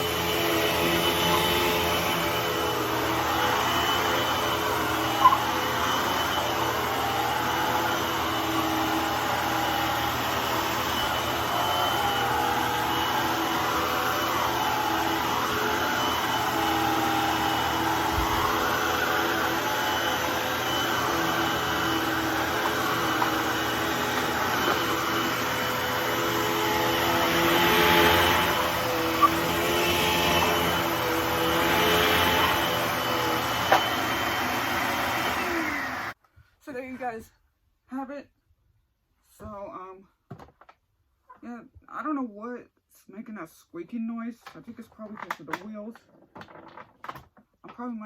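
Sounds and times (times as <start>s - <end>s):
upright vacuum cleaner running: 0.0s - 36.2s
wavering squeak: 5.1s - 5.5s.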